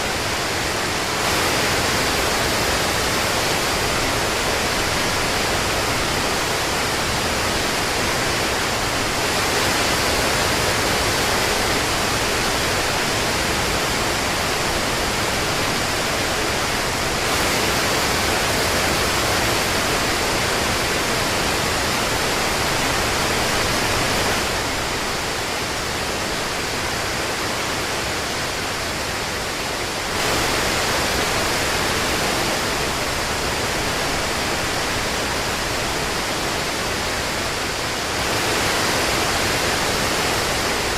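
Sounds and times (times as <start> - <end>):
steady rain falling: 0.0 - 40.9.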